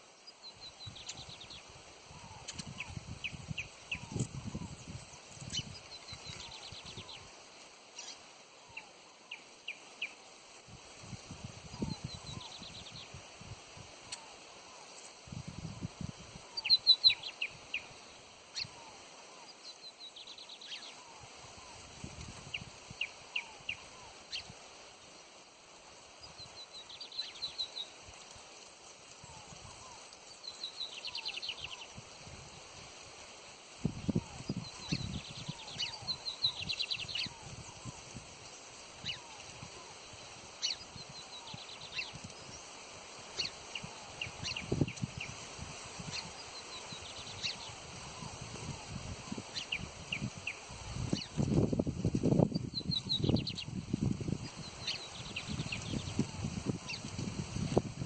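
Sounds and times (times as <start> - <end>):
small bird chirping: 0.2 - 7.3, 8.0 - 8.2, 16.5 - 21.0, 26.2 - 28.0, 34.0 - 42.7, 43.3 - 45.4, 46.0 - 51.6, 52.4 - 57.2.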